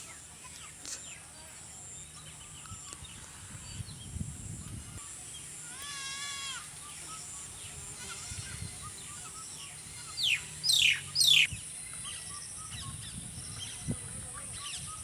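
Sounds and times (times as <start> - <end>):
faint bird chirps: 6.7 - 15.0.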